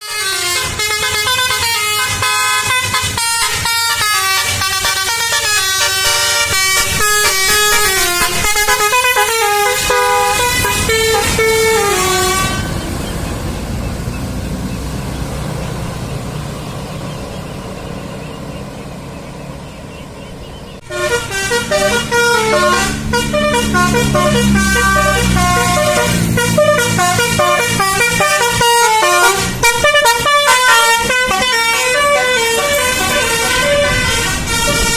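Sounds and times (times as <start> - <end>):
multi-tone bus horn melody: 0.0 - 16.5, 20.7 - 34.9
low rumbling vehicle noise: 0.0 - 34.9.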